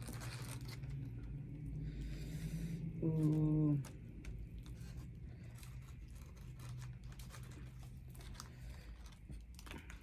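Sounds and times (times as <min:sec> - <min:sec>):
soft chewing: 0:03.1 - 0:10.0
tearing and crinkling of food: 0:03.1 - 0:10.0.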